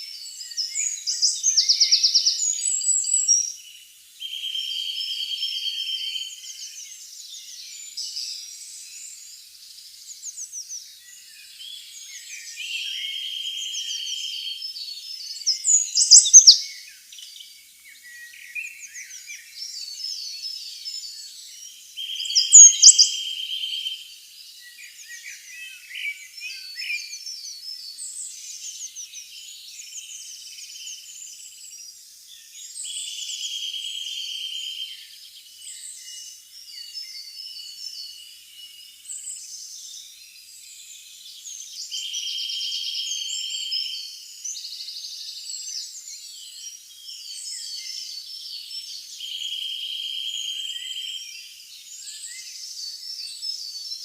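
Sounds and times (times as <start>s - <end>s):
songbirds singing and chirping: 0.0s - 54.0s
buzzy bird trill: 15.7s - 16.6s, 22.2s - 23.1s.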